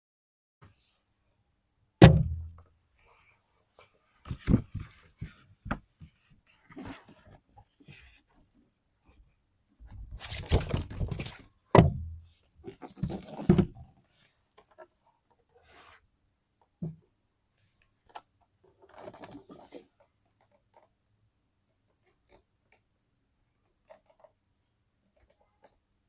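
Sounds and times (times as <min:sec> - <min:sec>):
sharp knock: 0:02.0 - 0:02.6
short thud: 0:02.0 - 0:02.6, 0:11.8 - 0:12.3.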